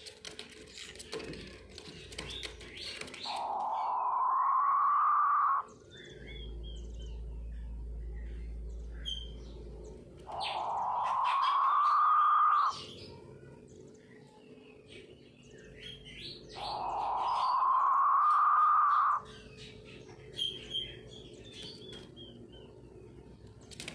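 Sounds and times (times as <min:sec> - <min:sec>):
small birds chirping: 0:00.0 - 0:23.9
quail rasping call: 0:03.2 - 0:05.6, 0:10.3 - 0:12.8, 0:16.6 - 0:19.2.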